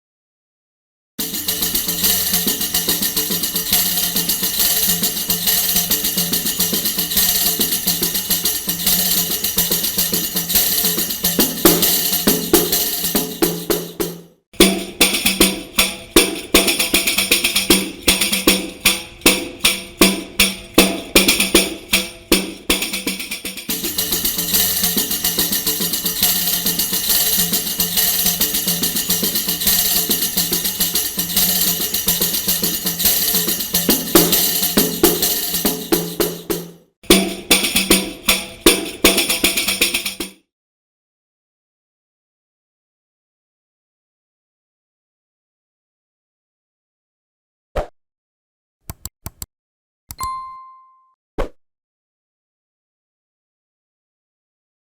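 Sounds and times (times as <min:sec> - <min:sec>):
tambourine struck hits: 0:01.2 - 0:09.6, 0:17.2 - 0:40.2
tambourine shaken jingle: 0:01.2 - 0:40.4.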